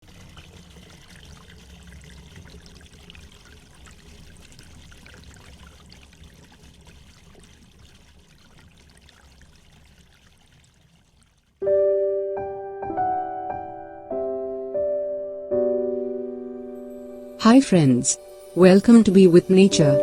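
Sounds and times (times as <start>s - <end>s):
water trickling in a stream: 0.0s - 11.6s, 17.2s - 20.0s.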